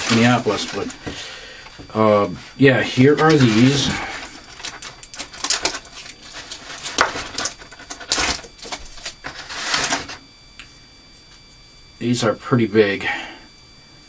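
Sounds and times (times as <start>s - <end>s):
packaging rustling: 0.0s - 1.2s, 3.2s - 10.2s.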